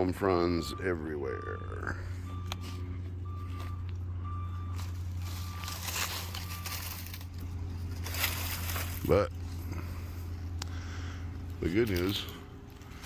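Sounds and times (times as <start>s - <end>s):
reversing alarm beeping: 0.0s - 9.1s
engine idling: 0.0s - 13.0s.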